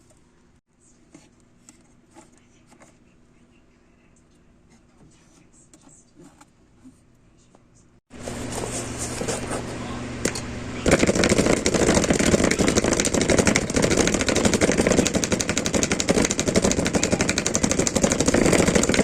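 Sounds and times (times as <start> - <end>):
speaker humming: 8.2 - 19.0
speaker crackling and popping: 10.8 - 19.0.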